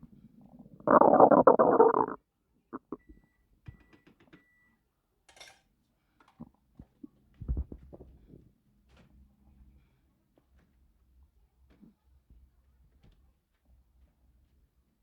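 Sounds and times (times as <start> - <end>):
stomach clicks and gurgles: 0.4 - 2.2, 2.8 - 3.0, 6.3 - 8.4
deep low gurgle: 0.6 - 2.2.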